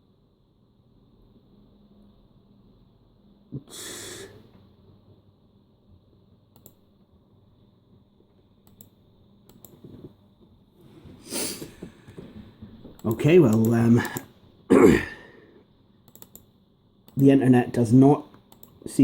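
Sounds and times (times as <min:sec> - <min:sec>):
breathy exhale: 0:03.6 - 0:04.5, 0:11.1 - 0:12.4.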